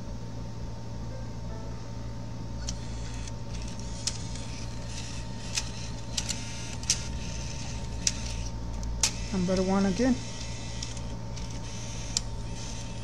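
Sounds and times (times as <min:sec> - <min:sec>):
sharp mechanism clicks: 0:02.6 - 0:13.0
small motor whirring: 0:02.6 - 0:13.0.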